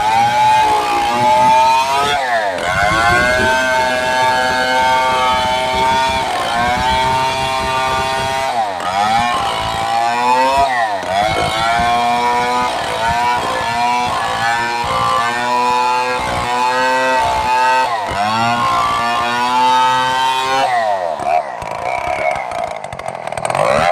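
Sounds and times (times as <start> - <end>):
chainsaw running at high revs: 0.0 - 23.9.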